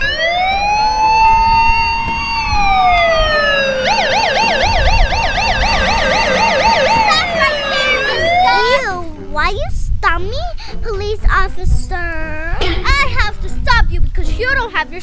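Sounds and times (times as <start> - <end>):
police siren wailing and yelping: 0.0 - 9.0.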